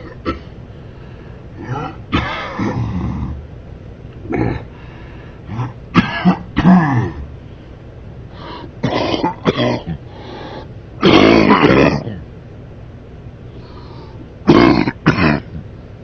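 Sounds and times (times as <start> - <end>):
man coughing: 0.0 - 0.6, 1.6 - 3.3, 4.2 - 4.7, 5.5 - 7.2, 8.8 - 10.0, 11.0 - 12.1, 14.5 - 15.6.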